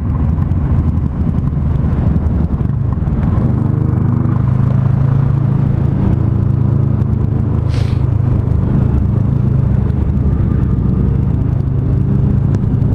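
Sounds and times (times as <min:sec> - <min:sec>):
motorcycle engine running: 0:00.0 - 0:12.9
brief hiss: 0:07.7 - 0:08.1.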